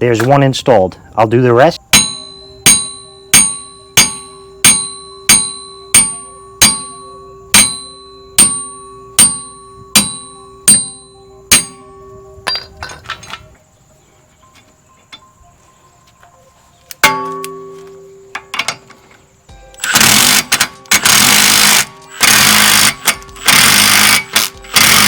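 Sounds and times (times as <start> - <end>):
hammer striking steel hub: 1.8 - 13.4, 17.0 - 18.9
light metal clinks: 2.0 - 13.7.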